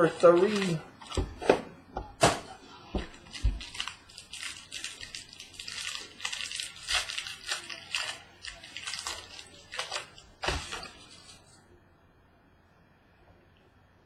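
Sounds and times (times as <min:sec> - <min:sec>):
packaging crinkling and tearing: 0:00.0 - 0:01.2, 0:03.0 - 0:11.5.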